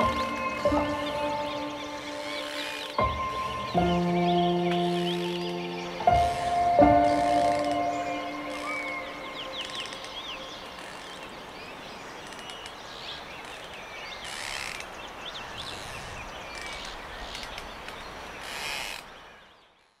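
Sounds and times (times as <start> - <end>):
small birds chirping: 0.0 - 20.0.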